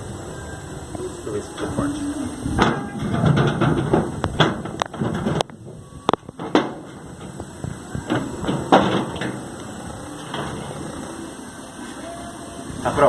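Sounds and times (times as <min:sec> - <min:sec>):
heavy metal bangs: 0:01.5 - 0:11.4.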